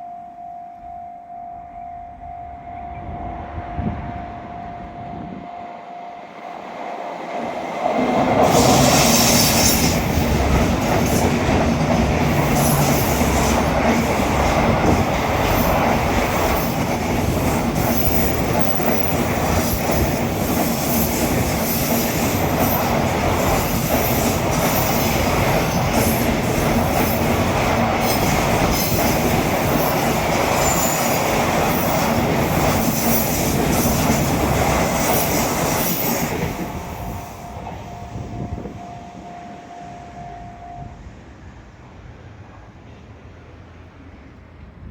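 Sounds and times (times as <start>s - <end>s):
freight train rushing past: 2.1s - 44.9s.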